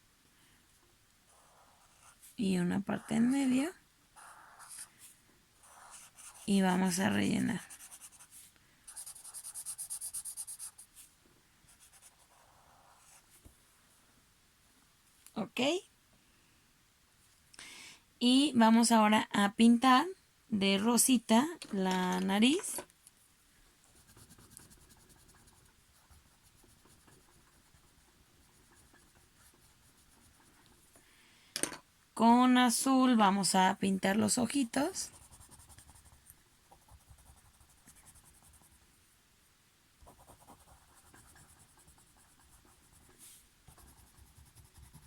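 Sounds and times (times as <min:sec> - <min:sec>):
marker scribbling on paper: 0:07.6 - 0:10.9, 0:23.9 - 0:30.9, 0:34.5 - 0:38.7, 0:40.0 - 0:45.0.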